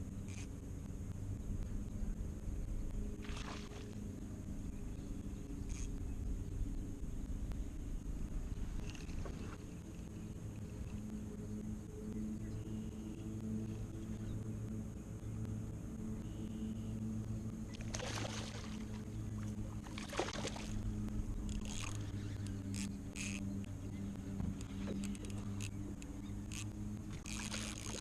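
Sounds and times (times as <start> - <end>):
boat engine droning: 0.0 - 28.0
water splashing: 17.8 - 19.0, 19.7 - 20.8.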